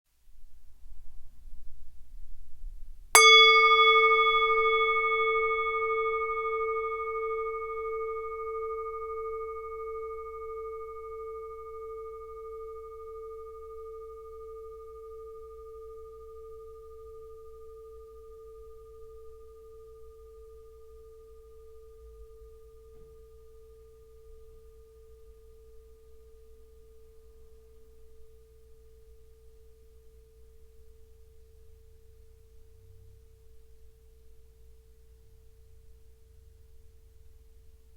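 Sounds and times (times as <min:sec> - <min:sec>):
singing bowl ringing: 0:03.2 - 0:32.8.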